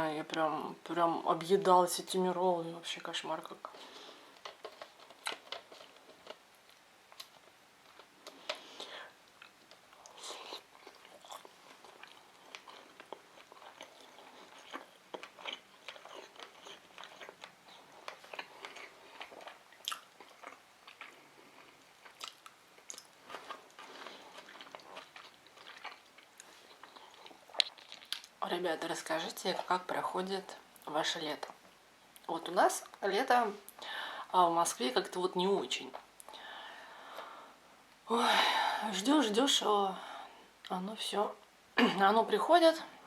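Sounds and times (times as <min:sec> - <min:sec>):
person chewing: 0:03.7 - 0:28.4.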